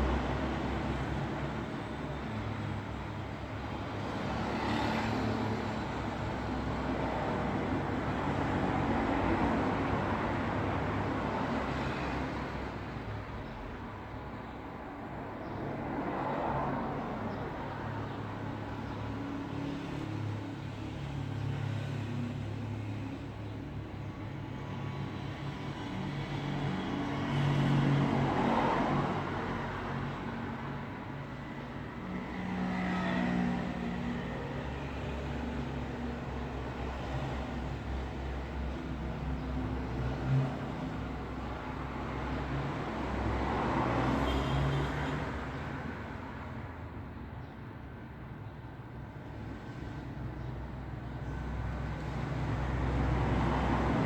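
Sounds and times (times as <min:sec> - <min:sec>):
cars passing: 0:25.6 - 0:47.0, 0:49.2 - 0:54.0.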